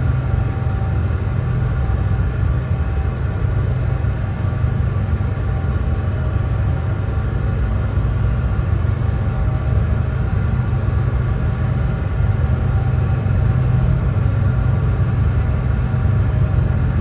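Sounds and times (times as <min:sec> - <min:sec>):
deep brown noise: 0:13.1 - 0:17.0.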